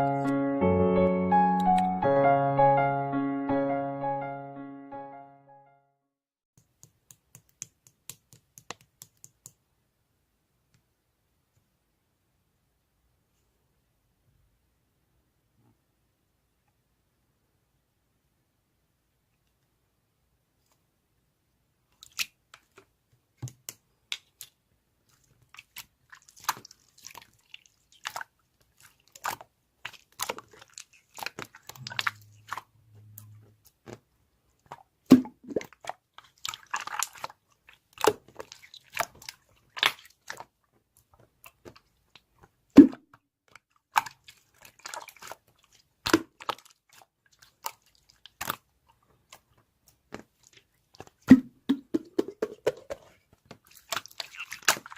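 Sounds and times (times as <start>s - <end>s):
crunching and chewing crisp food: 24.2s - 34.0s, 43.5s - 51.3s.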